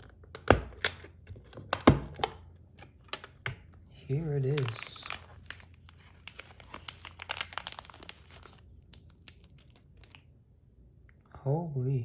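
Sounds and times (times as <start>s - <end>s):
packaging crinkling and tearing: 4.1s - 10.3s.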